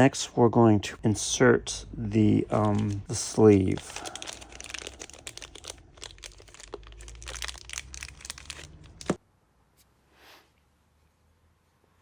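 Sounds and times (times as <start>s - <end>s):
hands handling small metal parts: 2.4s - 9.2s
crinkling rustle: 2.5s - 9.2s.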